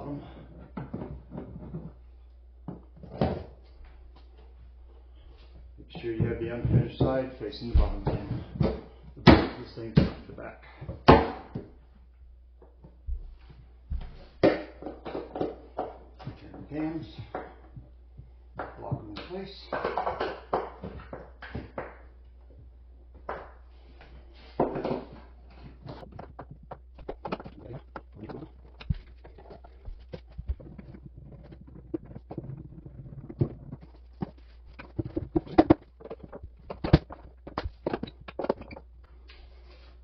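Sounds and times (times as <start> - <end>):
wooden panels knocking and tapping: 25.8 - 38.9.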